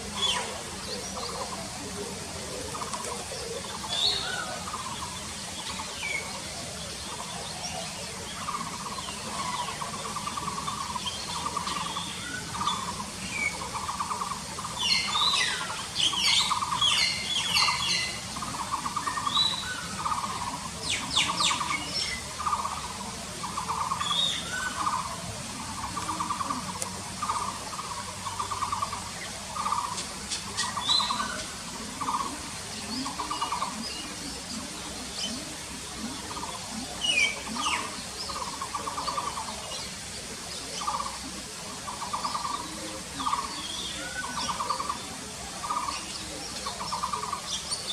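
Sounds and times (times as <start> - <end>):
bird chirps and trills: 7.1 - 40.0.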